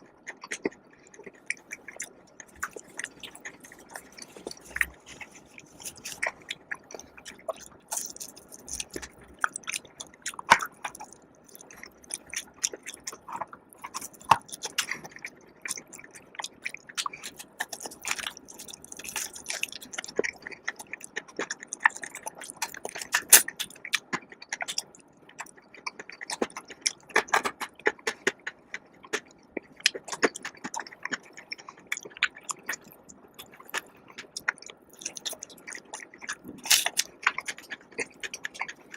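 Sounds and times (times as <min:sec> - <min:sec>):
chewing and biting food: 0:00.0 - 0:38.9.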